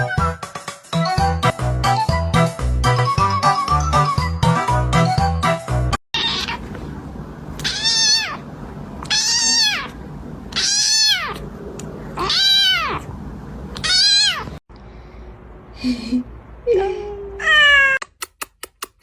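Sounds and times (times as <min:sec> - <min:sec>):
cat meowing: 0:06.2 - 0:06.7, 0:07.6 - 0:08.4, 0:09.0 - 0:11.4, 0:12.2 - 0:13.1, 0:13.8 - 0:14.6, 0:17.4 - 0:18.0.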